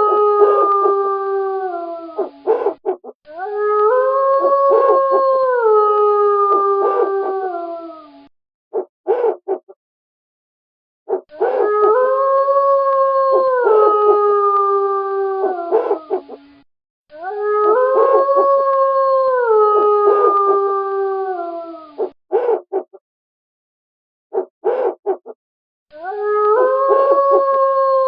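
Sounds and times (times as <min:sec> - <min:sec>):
wolf howling: 0:00.0 - 0:08.1, 0:08.8 - 0:09.7, 0:11.1 - 0:16.4, 0:17.1 - 0:23.0, 0:24.4 - 0:28.0
owl hoots: 0:08.8 - 0:09.7, 0:15.7 - 0:16.5, 0:22.0 - 0:23.0, 0:24.3 - 0:25.4.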